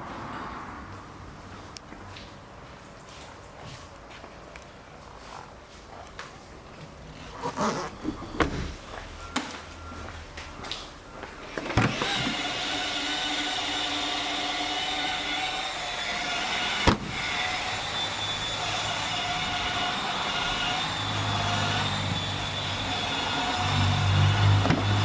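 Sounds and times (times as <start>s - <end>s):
car engine starting and running: 19.6s - 25.0s.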